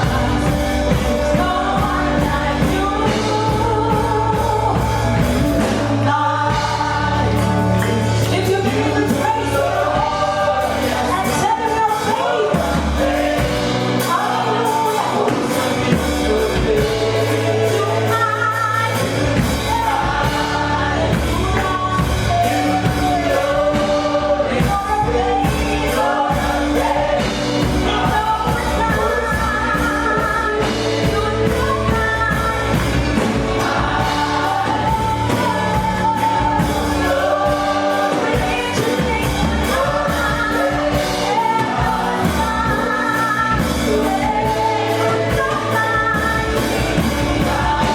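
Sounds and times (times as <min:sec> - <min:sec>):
gospel music with singers and band: 0:00.0 - 0:47.9.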